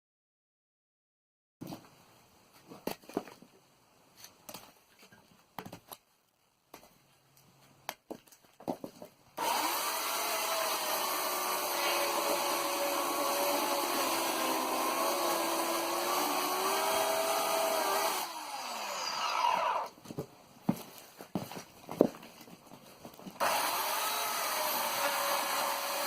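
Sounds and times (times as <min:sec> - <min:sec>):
electric chainsaw motor whine: 0:09.4 - 0:19.9, 0:23.4 - 0:26.0.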